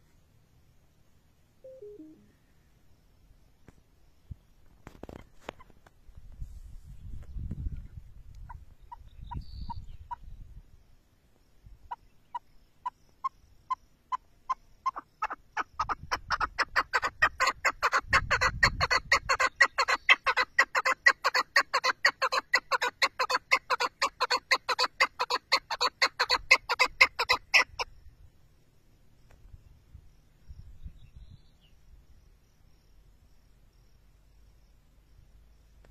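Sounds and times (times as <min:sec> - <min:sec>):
partridge clucking calls: 0:11.9 - 0:27.9.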